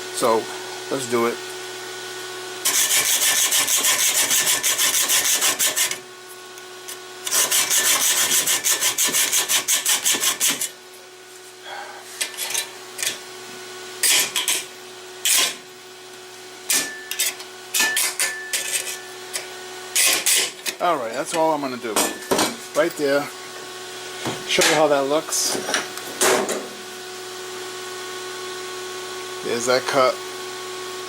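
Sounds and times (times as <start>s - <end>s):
hacksaw cutting metal: 2.6s - 6.0s, 7.2s - 10.8s, 12.2s - 13.2s, 14.0s - 15.6s, 16.7s - 22.6s.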